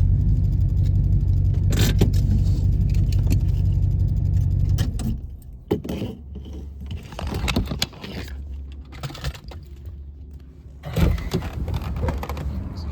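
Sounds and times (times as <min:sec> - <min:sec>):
car engine idling: 0:00.0 - 0:05.7
clicks and rattles: 0:04.7 - 0:12.8.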